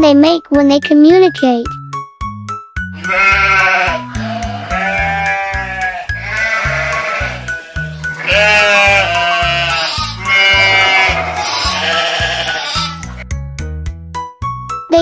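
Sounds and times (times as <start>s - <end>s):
background music with bass line: 1.7s - 15.0s
antelope bleating: 3.0s - 13.2s.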